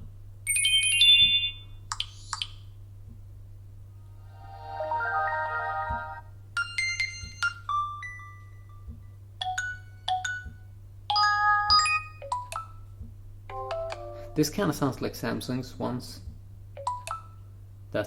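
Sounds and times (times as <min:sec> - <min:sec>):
phone notification tones: 0:04.4 - 0:08.1.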